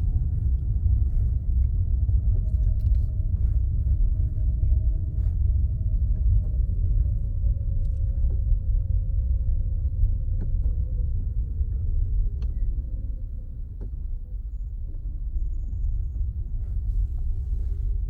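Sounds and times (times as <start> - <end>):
car road and engine drone: 0.0 - 18.0.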